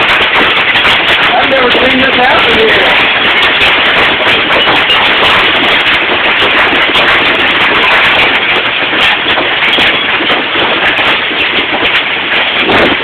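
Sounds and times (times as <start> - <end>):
hail rattling: 0.0 - 13.0.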